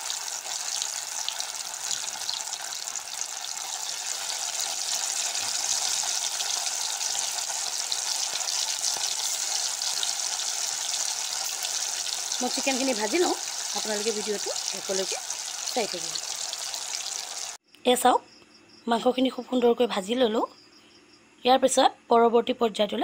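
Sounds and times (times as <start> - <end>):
chicken deep-frying in oil: 0.0 - 17.6.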